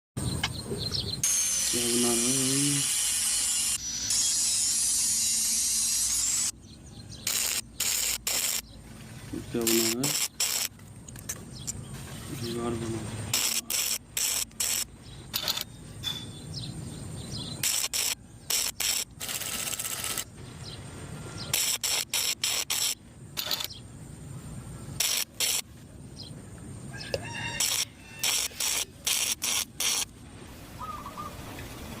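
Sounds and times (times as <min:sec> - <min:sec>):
arc welding crackling: 0:01.2 - 0:06.6, 0:07.2 - 0:08.7, 0:09.5 - 0:10.8, 0:13.2 - 0:15.5, 0:17.6 - 0:20.4, 0:21.5 - 0:23.6, 0:25.0 - 0:25.6, 0:27.6 - 0:30.2.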